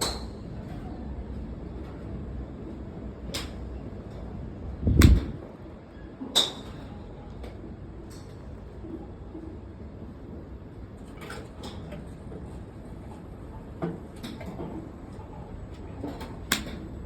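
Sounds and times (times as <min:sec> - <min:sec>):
golf clubs striking balls: 0:04.9 - 0:05.4, 0:16.0 - 0:17.0.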